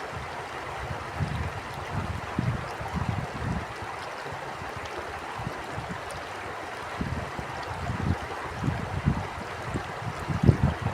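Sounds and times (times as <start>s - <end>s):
stream water flowing: 0.0s - 10.9s
wind buffeting microphone: 0.2s - 3.8s, 7.0s - 10.9s.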